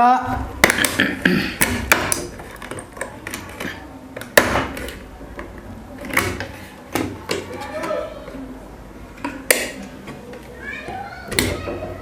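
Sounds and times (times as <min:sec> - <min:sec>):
sharp plastic clicks and knocks: 0:00.3 - 0:07.6.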